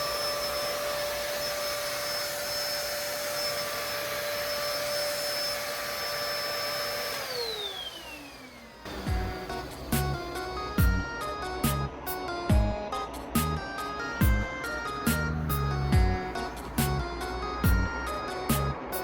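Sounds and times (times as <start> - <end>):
vacuum cleaner whine: 0.0 - 12.3
music: 8.9 - 19.0.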